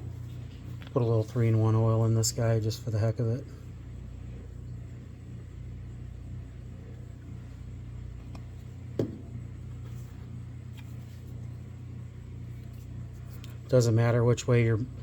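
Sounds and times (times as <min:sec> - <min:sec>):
low background hum: 0:00.0 - 0:15.0
light knock: 0:09.0 - 0:09.4.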